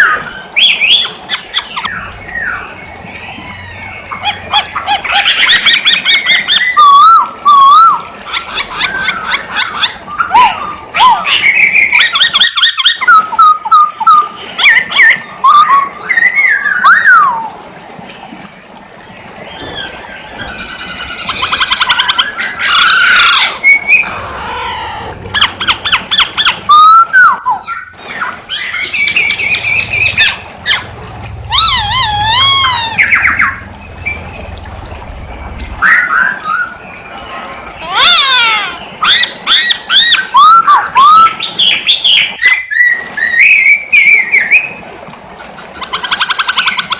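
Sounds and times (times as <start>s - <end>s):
bird song with whistles and trills: 0.0s - 17.6s, 25.4s - 30.8s, 31.5s - 34.4s, 35.6s - 37.3s, 38.0s - 44.8s.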